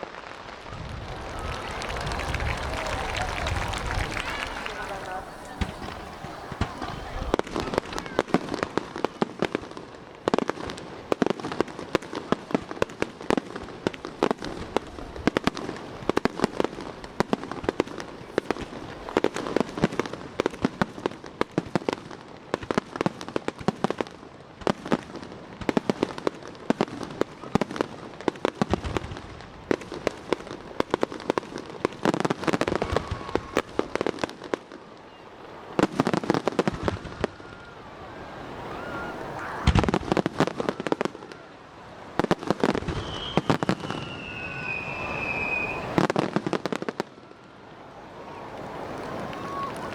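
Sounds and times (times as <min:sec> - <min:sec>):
fireworks deep booms: 0:00.0 - 0:21.1, 0:28.5 - 0:34.6, 0:35.6 - 0:41.4, 0:42.1 - 0:47.0
fireworks crackling pops: 0:00.0 - 0:49.9.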